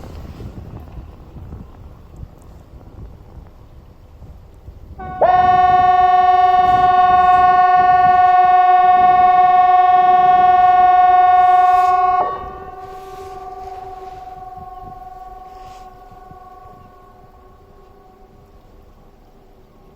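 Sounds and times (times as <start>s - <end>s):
warning siren steady tone: 5.0s - 18.9s.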